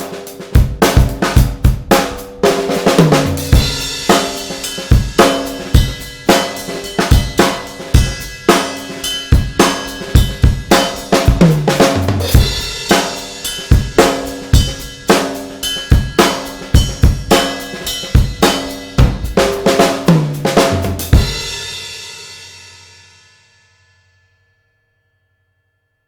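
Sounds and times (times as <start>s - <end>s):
snare drum crack: 0.0s - 8.9s, 10.7s - 14.5s, 18.4s - 21.3s
cymbals ringing: 2.6s - 19.8s
kick drum: 19.0s - 19.4s.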